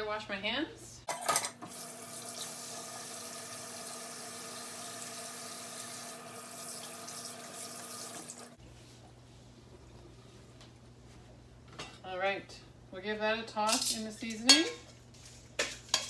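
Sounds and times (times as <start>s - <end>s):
tap water running into sink: 1.1s - 8.6s.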